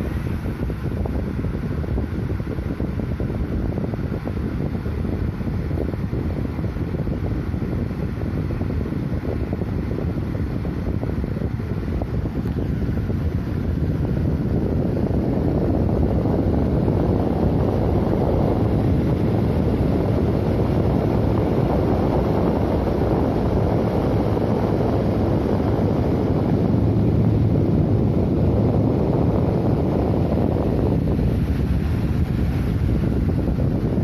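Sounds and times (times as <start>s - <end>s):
box fan rushing air: 0.0s - 34.0s.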